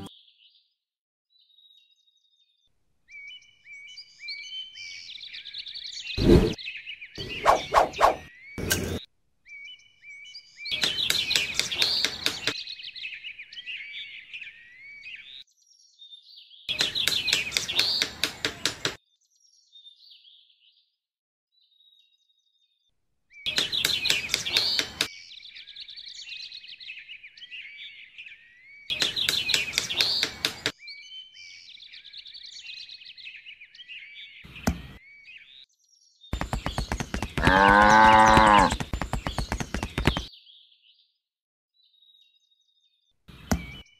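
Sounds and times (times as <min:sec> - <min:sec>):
birds chirping: 0:00.0 - 0:00.4, 0:03.1 - 0:16.0, 0:16.7 - 0:19.7, 0:23.4 - 0:41.0, 0:43.3 - 0:43.9
rapid tapping: 0:36.4 - 0:40.3
cow mooing: 0:37.4 - 0:38.8.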